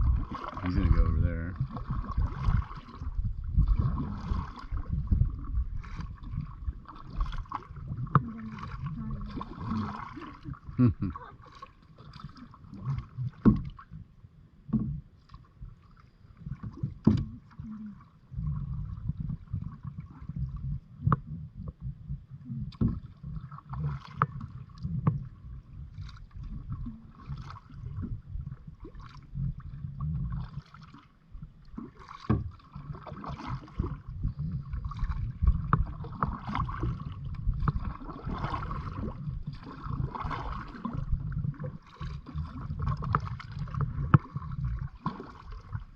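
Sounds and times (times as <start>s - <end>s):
wind rumble on microphone: 0.0s - 11.3s, 16.4s - 30.6s, 32.3s - 45.9s
paddle splashing in water: 0.0s - 45.9s.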